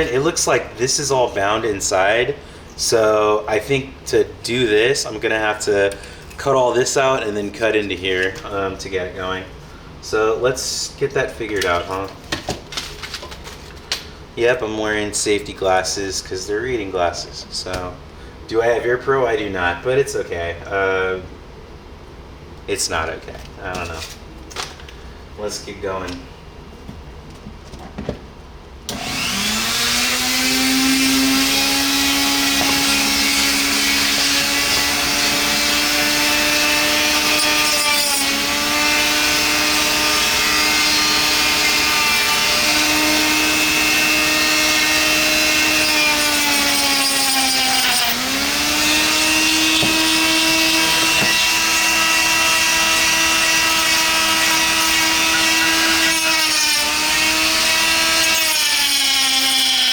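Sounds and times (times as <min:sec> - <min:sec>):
rotary tool cutting plastic: 0:28.9 - 0:59.9.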